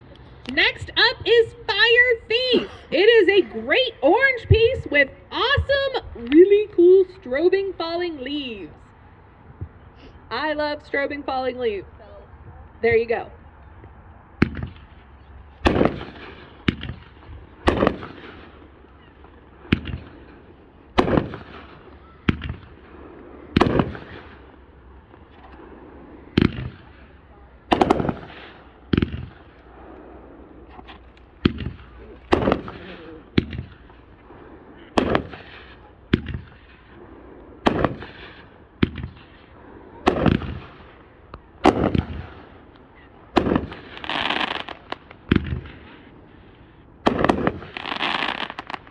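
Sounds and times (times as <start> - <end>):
firework reports: 0.0 - 13.4, 14.3 - 48.9
firework crackling hiss: 43.4 - 45.2, 47.1 - 48.9.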